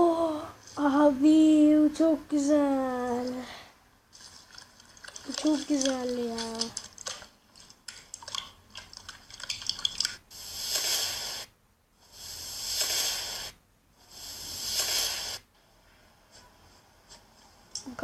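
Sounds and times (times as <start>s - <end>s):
slime squishing hisses: 10.3s - 15.5s.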